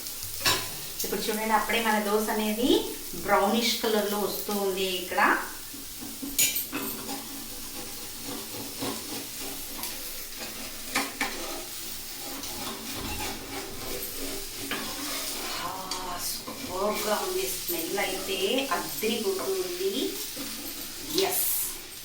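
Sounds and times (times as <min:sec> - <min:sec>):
oil sizzling under frying dosa: 0:00.0 - 0:22.0.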